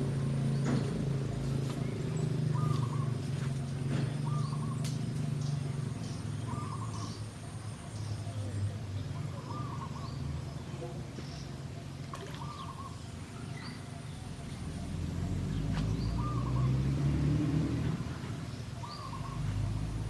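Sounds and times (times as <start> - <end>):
bird call: 2.5 - 3.4, 11.2 - 14.9, 18.8 - 19.6.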